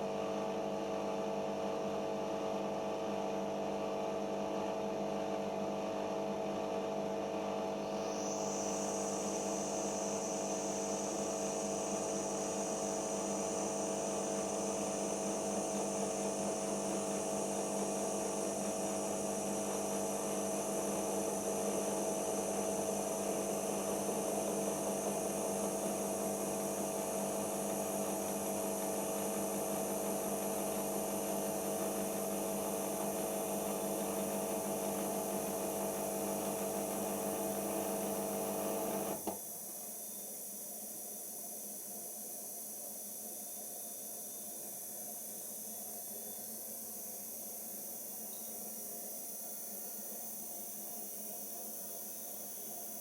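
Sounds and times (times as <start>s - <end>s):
washing machine motor hum: 0.0s - 39.3s
high whine of spin cycle: 7.6s - 39.2s.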